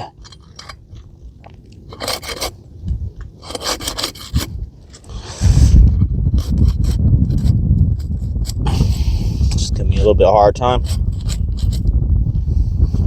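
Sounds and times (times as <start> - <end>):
tool scraping roof shingles: 1.8 - 12.0
low rumble: 4.3 - 13.0.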